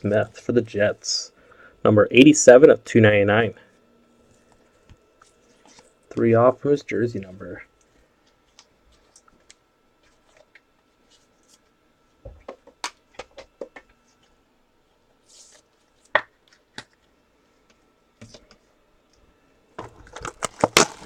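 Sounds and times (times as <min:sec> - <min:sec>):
cards tapping and clicking: 0:12.4 - 0:13.9.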